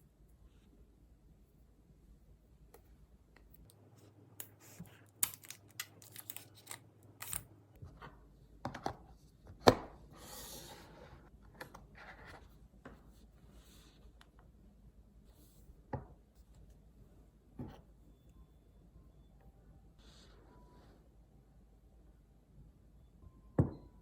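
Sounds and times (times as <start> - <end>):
hands clicking and tapping packaging: 4.4 - 7.4
packaging rustling: 5.1 - 7.4.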